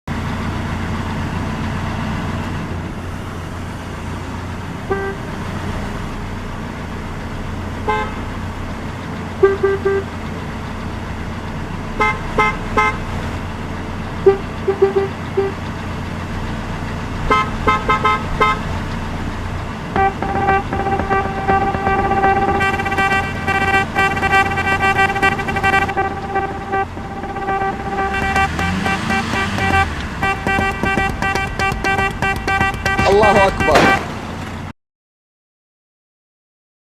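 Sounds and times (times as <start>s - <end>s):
traffic noise: 0.0s - 34.7s
car horns honking: 4.8s - 5.4s, 7.8s - 8.4s, 9.3s - 10.2s, 12.0s - 13.1s, 14.2s - 15.7s, 17.3s - 18.8s, 19.9s - 34.6s.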